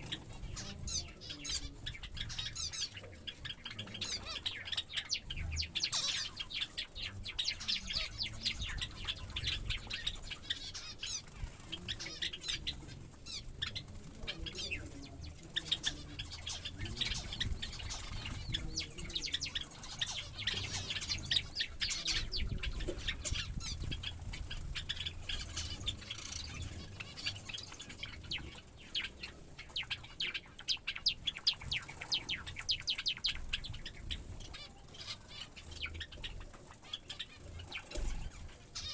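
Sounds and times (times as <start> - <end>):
small birds chirping: 0.0 - 38.9
wings fluttering: 30.7 - 38.9.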